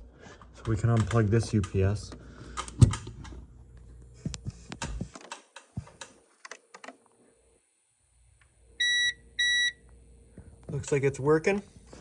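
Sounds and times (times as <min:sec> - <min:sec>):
high alarm beep: 0:08.8 - 0:09.8.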